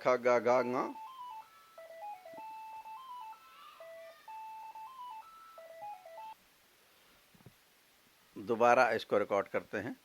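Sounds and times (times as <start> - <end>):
electronic beeping tune: 0.5 - 6.4.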